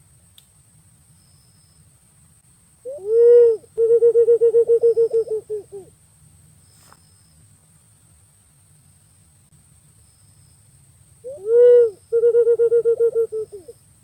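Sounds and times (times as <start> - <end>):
pigeon calling: 2.9 - 5.9, 11.3 - 13.8.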